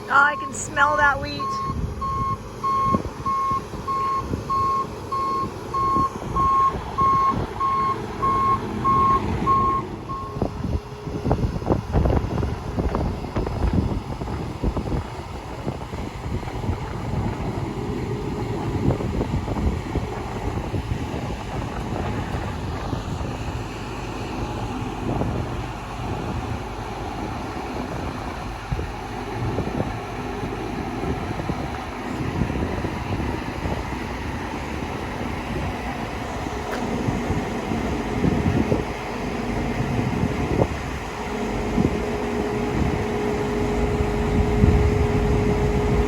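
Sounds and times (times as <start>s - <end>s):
vehicle engine rumbling: 0.0s - 46.0s
wind buffeting microphone: 0.0s - 46.0s.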